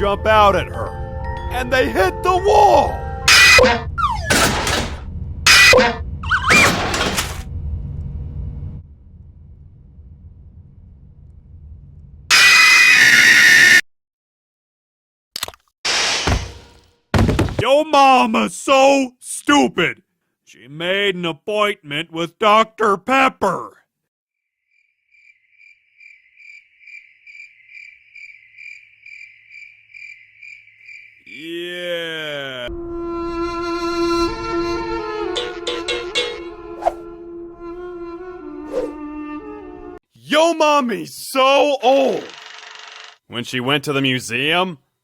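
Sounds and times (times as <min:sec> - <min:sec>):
warbling whistle: 0:03.3 - 0:04.3
cartoon smashes and shattering: 0:03.3 - 0:07.4, 0:15.9 - 0:17.6
low rumble: 0:03.8 - 0:06.5, 0:07.1 - 0:12.3
cricket chirping: 0:24.7 - 0:31.4.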